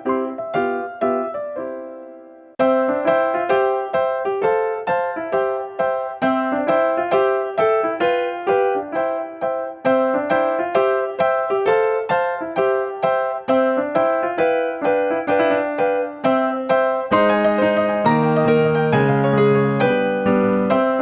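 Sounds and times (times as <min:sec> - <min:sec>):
light piano melody: 0:00.0 - 0:21.0.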